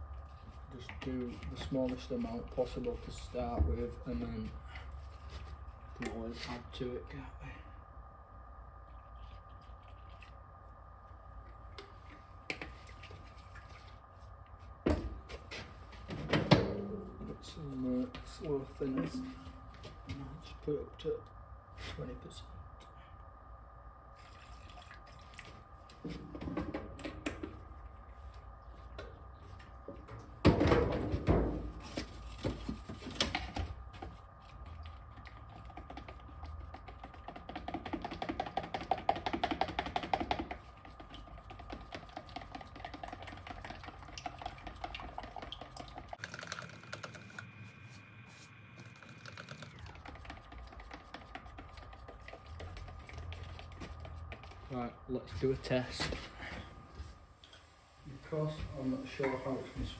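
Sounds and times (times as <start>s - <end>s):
faint steady hum: 0.0s - 59.9s
rapid tapping and scraping: 31.8s - 47.3s, 49.2s - 54.7s.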